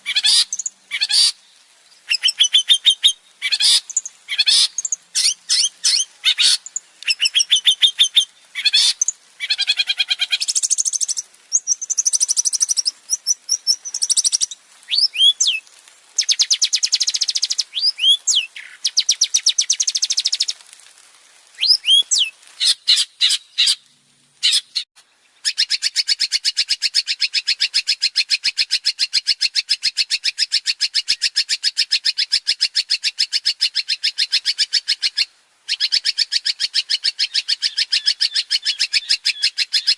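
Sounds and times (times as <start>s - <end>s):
bird singing high-pitched song: 2.0s - 15.6s, 16.2s - 20.6s.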